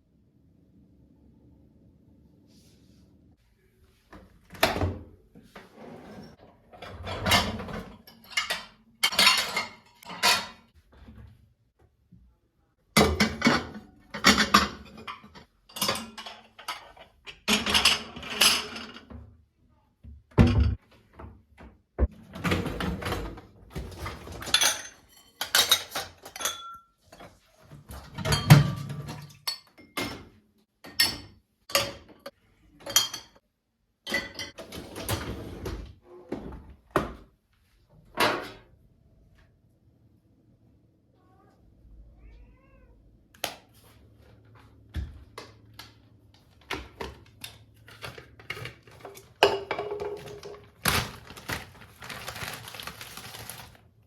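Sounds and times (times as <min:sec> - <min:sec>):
dishes and utensils clinking: 0:06.8 - 0:10.7, 0:13.0 - 0:19.2, 0:23.8 - 0:33.4, 0:34.0 - 0:34.8, 0:46.9 - 0:50.7.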